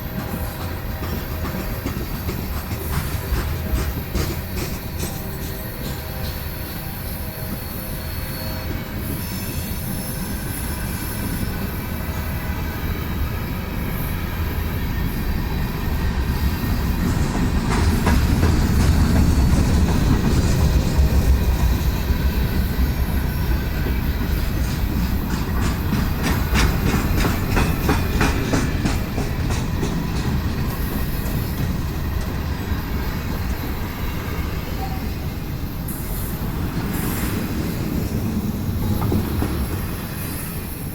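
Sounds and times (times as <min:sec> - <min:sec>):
wheel clacks over rail joints: 0:00.0 - 0:06.5, 0:17.0 - 0:21.9, 0:23.9 - 0:32.4
diesel locomotive rumble: 0:00.0 - 0:40.9
train wheel squeal: 0:00.0 - 0:40.9.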